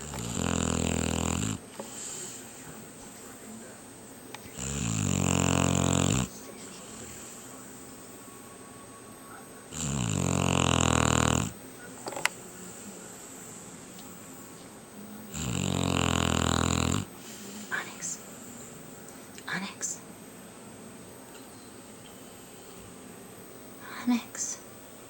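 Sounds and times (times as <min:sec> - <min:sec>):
dog snoring: 0:00.0 - 0:02.4, 0:04.4 - 0:07.5, 0:09.7 - 0:11.6, 0:15.3 - 0:17.2.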